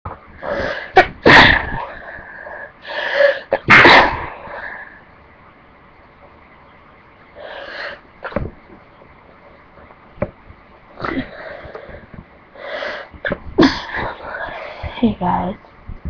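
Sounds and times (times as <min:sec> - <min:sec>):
drawn-in breath: 0:07.4 - 0:08.0, 0:11.1 - 0:13.2.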